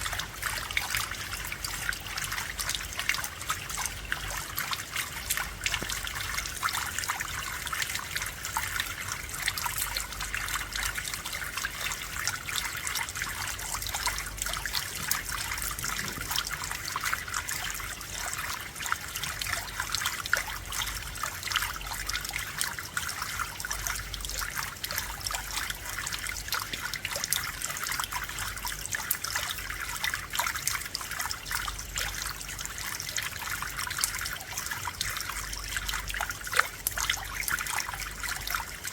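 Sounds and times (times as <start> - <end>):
rain pattering: 13.5 - 18.2.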